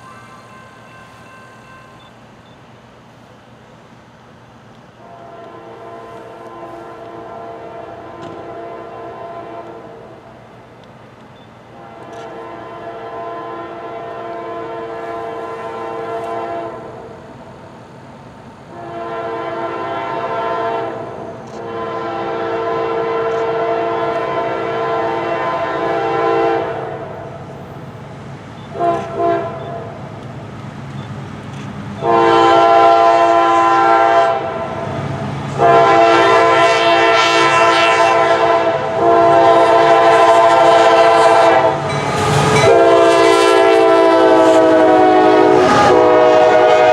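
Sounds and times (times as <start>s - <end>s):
train rumble: 0.0s - 46.9s
train air horn blasts: 5.0s - 10.2s, 11.7s - 17.1s, 18.7s - 27.5s, 28.7s - 30.0s, 32.0s - 34.9s, 35.5s - 46.9s.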